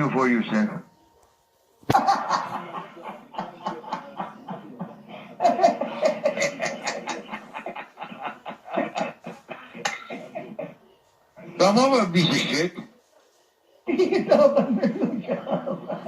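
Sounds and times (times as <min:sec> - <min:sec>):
person laughing: 0:01.9 - 0:10.6.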